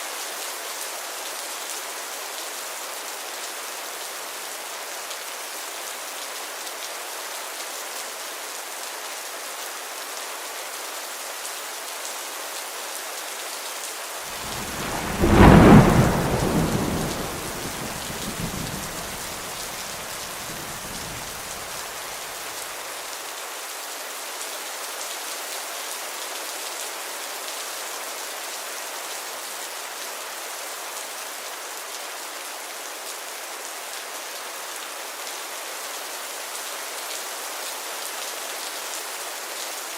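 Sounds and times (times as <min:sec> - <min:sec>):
heavy rain hissing: 0:14.3 - 0:22.8
thunderclap rumbling: 0:14.4 - 0:21.8.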